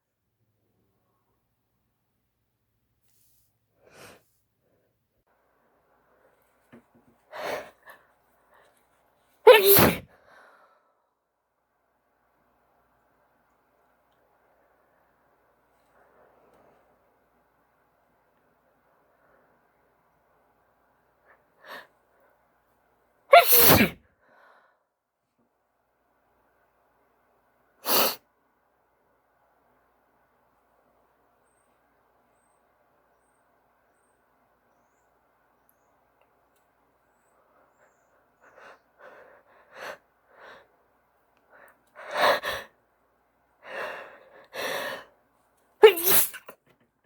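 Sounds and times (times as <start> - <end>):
woman sneezing: 9.5 - 10.1, 23.3 - 24.0, 27.8 - 28.2, 45.8 - 46.5.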